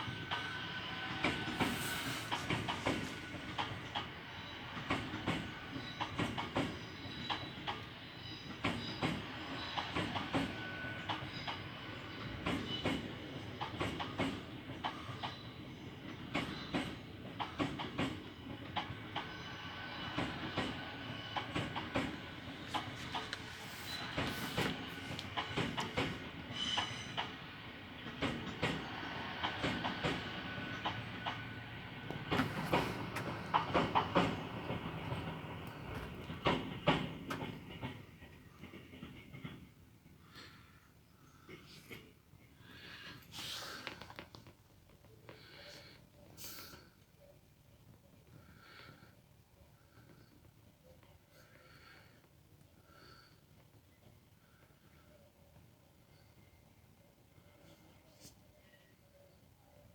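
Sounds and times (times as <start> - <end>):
train wheels clicking over rail joints: 0.0 - 19.4, 20.0 - 40.6
train wheels squealing: 0.0 - 39.6, 53.0 - 59.9.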